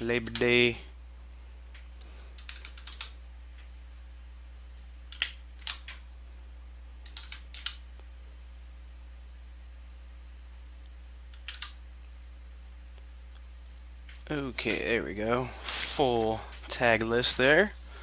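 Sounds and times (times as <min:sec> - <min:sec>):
typing on keyboard: 0:02.4 - 0:03.2, 0:04.7 - 0:06.0, 0:07.0 - 0:07.8, 0:11.3 - 0:11.8.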